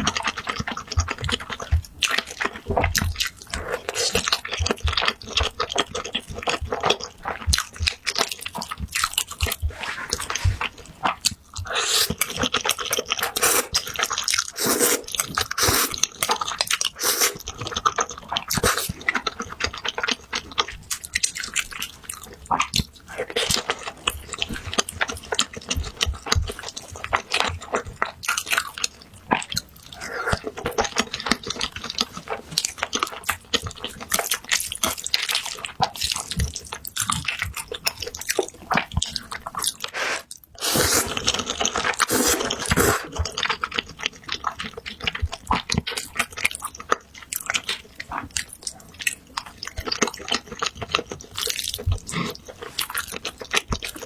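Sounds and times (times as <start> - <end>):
wet chewing and smacking: 0.0 - 54.0
noodle slurping: 9.4 - 17.8, 18.4 - 19.2, 29.9 - 30.6, 39.6 - 43.5.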